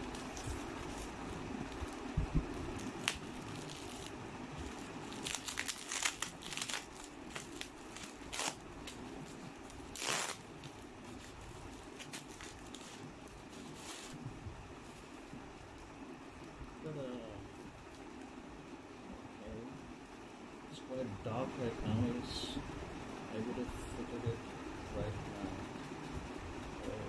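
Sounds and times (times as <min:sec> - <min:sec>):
packaging crinkling and rustling: 0:00.0 - 0:02.1, 0:02.7 - 0:14.2.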